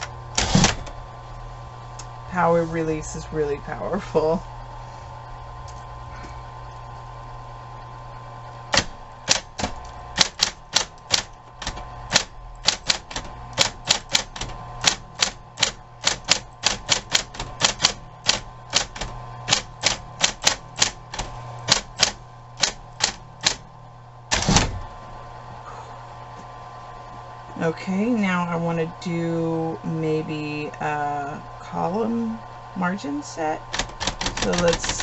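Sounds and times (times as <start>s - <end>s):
typewriter keystrokes: 0.0s - 0.9s, 8.7s - 23.6s, 24.3s - 24.8s, 33.7s - 35.0s
short rattling burst: 0.0s - 1.0s, 24.3s - 25.0s
typewriter motor hum: 0.0s - 2.2s, 5.6s - 25.2s, 33.6s - 35.0s.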